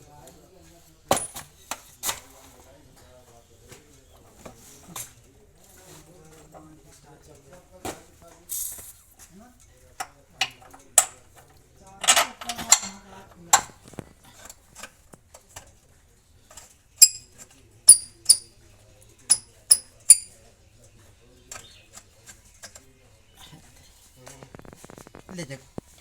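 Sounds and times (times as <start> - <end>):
metal tools clinking: 17.0 - 17.3, 17.9 - 18.5, 19.3 - 20.4.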